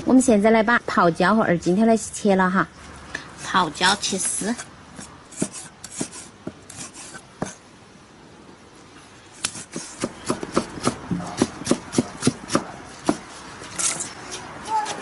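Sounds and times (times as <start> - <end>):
knife chopping on cutting board: 9.4 - 13.3.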